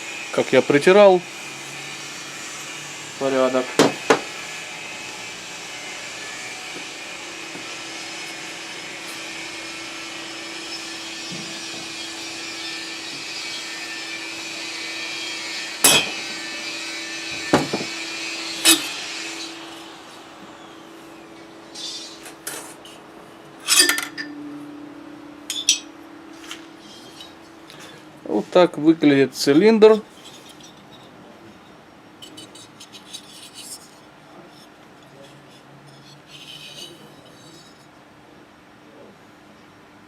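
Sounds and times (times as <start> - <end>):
machine whirring with low hum: 1.2 - 28.5
metallic knocks and clinks of tools: 23.7 - 24.4, 25.5 - 25.9.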